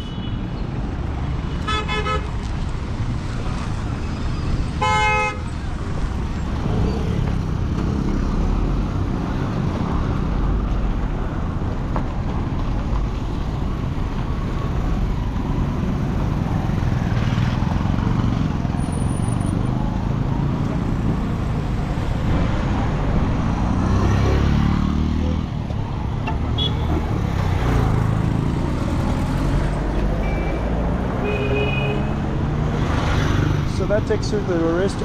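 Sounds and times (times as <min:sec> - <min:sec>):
rumble of passing vehicles: 0:00.0 - 0:35.0
vehicle horn honks: 0:04.8 - 0:05.4, 0:31.2 - 0:32.1.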